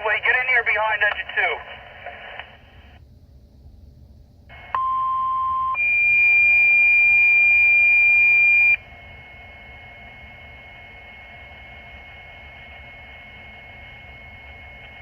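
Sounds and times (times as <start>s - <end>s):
radio hiss: 0.0s - 3.0s, 6.9s - 15.0s
faint steady tone: 2.8s - 15.0s.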